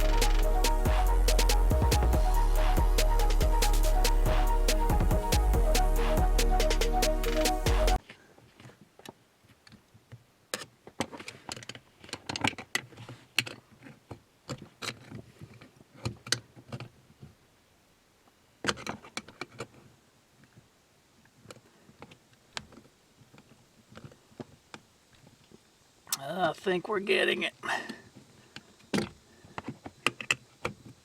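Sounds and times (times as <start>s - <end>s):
background music: 0.0s - 8.0s.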